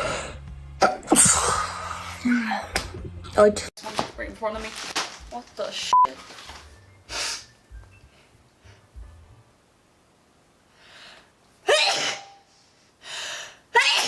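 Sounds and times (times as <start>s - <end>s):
person sneezing: 0.8s - 1.8s, 11.6s - 12.5s
noisy intake of breath: 7.1s - 7.5s.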